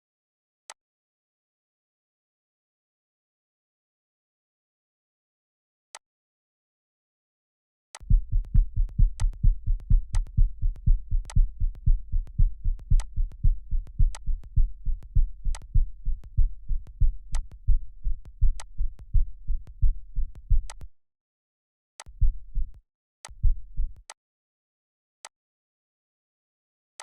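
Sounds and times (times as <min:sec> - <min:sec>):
deep heartbeat thumps: 0:08.0 - 0:20.9, 0:22.1 - 0:24.0.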